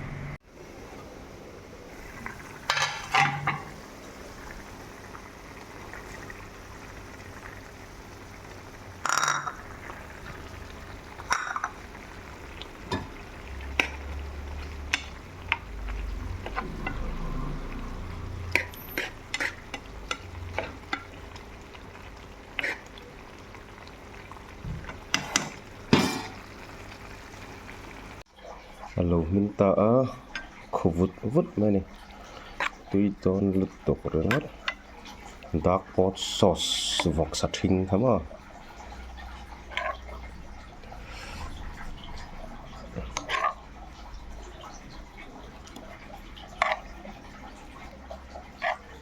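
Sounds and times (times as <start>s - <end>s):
food sizzling in a pan: 0.5s - 49.0s
utensil scraping a pan: 12.5s - 21.4s, 22.5s - 23.0s, 24.9s - 26.5s, 39.4s - 40.2s, 43.0s - 43.7s, 46.4s - 47.6s, 48.4s - 49.0s.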